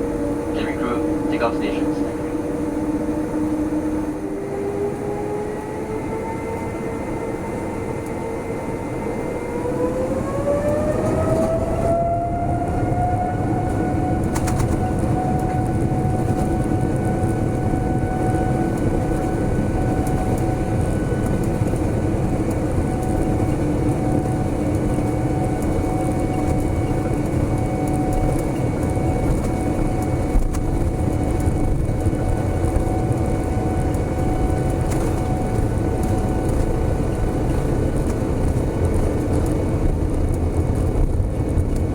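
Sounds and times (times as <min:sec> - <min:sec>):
jet engines whining: 0:00.0 - 0:41.9.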